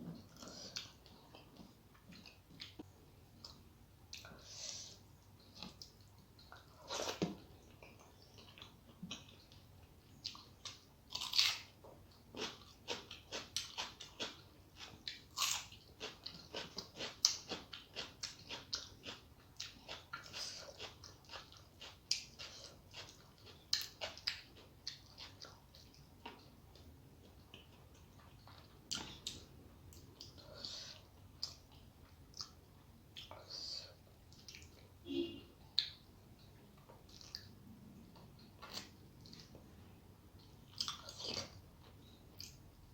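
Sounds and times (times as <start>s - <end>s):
person chewing food: 0.1s - 35.0s, 35.7s - 42.7s.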